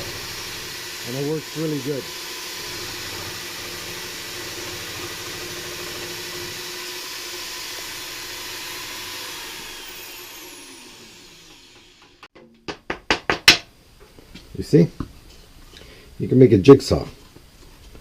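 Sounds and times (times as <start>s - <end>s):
jigsaw motor running: 0.0s - 12.2s.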